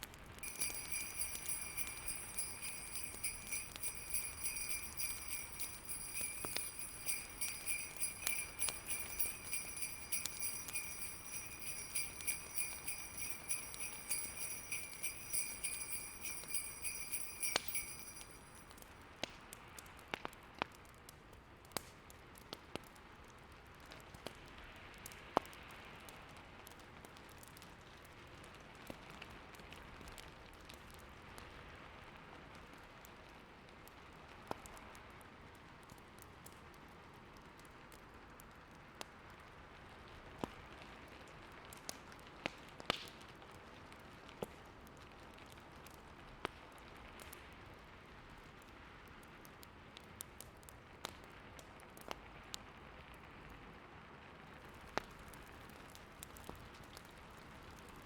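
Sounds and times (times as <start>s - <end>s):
fireplace crackling: 0.4s - 18.8s
sleigh bells jingling: 0.4s - 18.8s.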